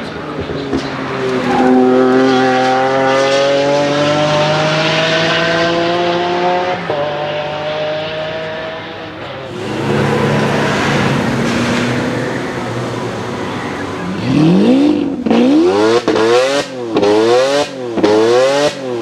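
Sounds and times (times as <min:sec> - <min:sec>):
sports car engine accelerating: 0:00.0 - 0:19.0
gear upshift: 0:09.2 - 0:17.1.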